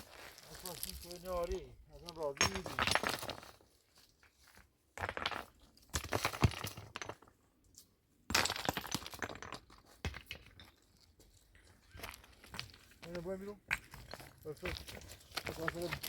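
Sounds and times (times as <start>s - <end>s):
hard objects clinking and clattering: 2.1s - 3.6s, 11.8s - 16.0s.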